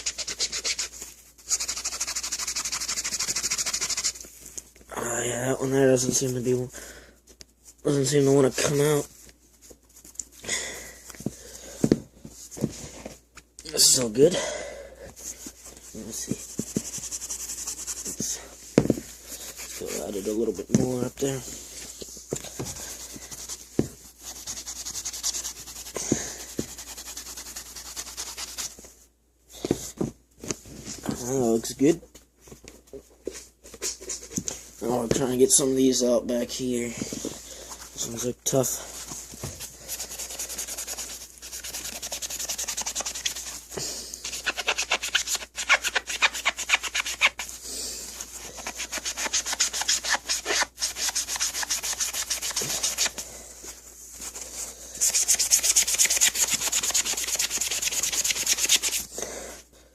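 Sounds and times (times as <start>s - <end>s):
eraser scrubbing a shoe: 0.0s - 4.2s, 16.0s - 18.5s, 19.3s - 21.3s, 22.5s - 28.8s, 39.8s - 47.6s, 48.2s - 53.2s, 55.0s - 59.1s.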